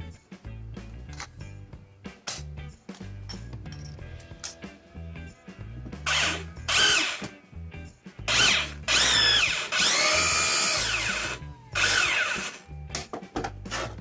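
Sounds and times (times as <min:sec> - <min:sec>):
rotary hammer drill motor: 0:06.1 - 0:07.3, 0:08.3 - 0:12.6, 0:13.7 - 0:14.0.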